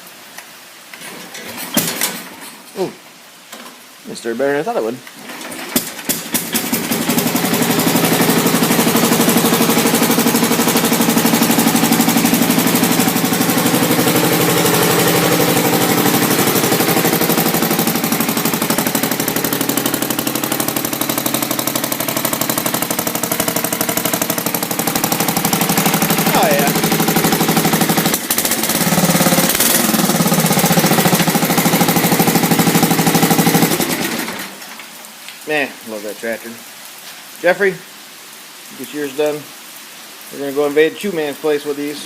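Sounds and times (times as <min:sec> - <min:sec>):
garden tractor engine running: 0:05.1 - 0:34.6.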